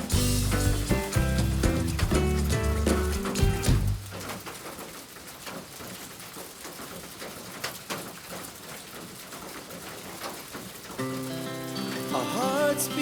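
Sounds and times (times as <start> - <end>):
background music: 0.0 - 4.0
rain falling: 0.0 - 13.0.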